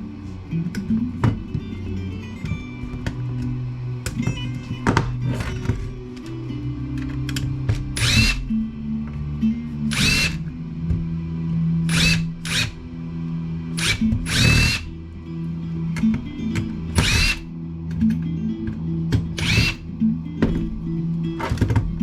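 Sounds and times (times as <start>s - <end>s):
cordless drill whining: 8.0s - 8.6s, 9.9s - 10.5s, 11.9s - 12.8s, 13.8s - 15.0s, 17.0s - 17.4s, 19.4s - 19.8s.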